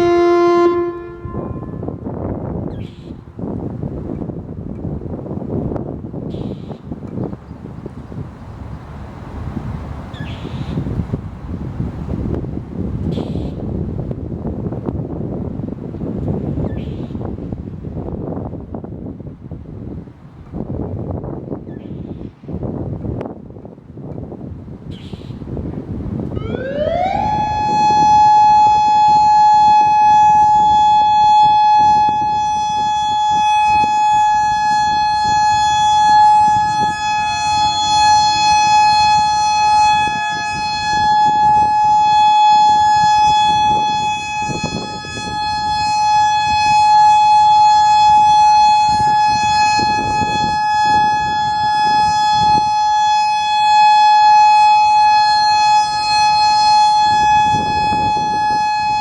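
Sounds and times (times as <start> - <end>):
warning siren steady tone: 0.0 - 7.3, 10.0 - 18.8, 25.0 - 59.0
wind buffeting microphone: 0.0 - 59.0
fainter distant siren tone: 26.4 - 59.0.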